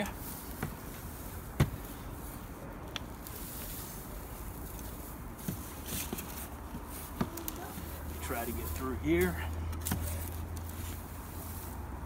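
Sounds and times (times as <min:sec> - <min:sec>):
outdoor background hiss: 0:00.0 - 0:12.0
garden fork scraping soil: 0:03.1 - 0:12.0.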